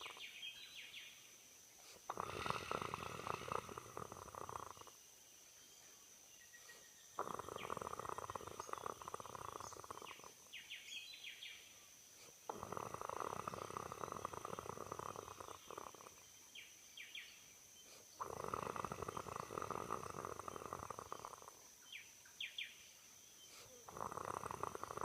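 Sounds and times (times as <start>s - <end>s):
person snoring: 0.0s - 0.2s, 2.0s - 4.9s, 7.2s - 10.3s, 12.5s - 16.2s, 18.2s - 21.6s, 23.6s - 25.0s.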